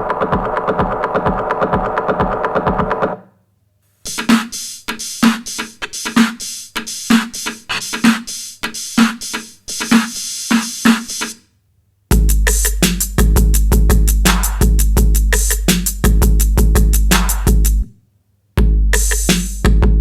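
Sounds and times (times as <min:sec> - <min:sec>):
beat with heavy bass: 0:00.0 - 0:03.2, 0:12.1 - 0:17.8, 0:18.6 - 0:20.0
drum machine beat: 0:00.0 - 0:03.2, 0:12.1 - 0:17.8, 0:18.6 - 0:20.0.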